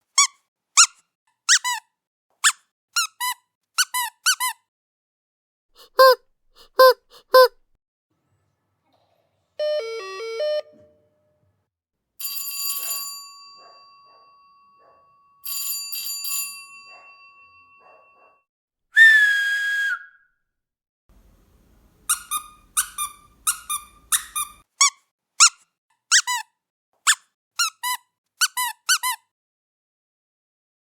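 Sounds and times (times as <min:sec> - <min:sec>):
squeaky dog toy squeaking: 0:00.1 - 0:04.7, 0:05.8 - 0:07.6, 0:22.1 - 0:29.3.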